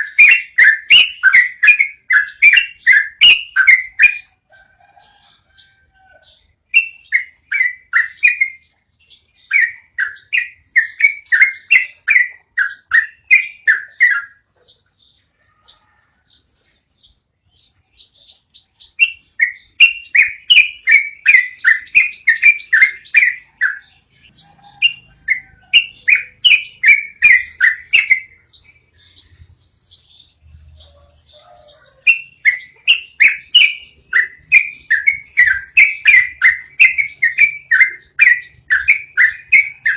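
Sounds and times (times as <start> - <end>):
bulbul singing rolling song: 0.0 - 39.9
soft bird twittering: 0.0 - 39.9.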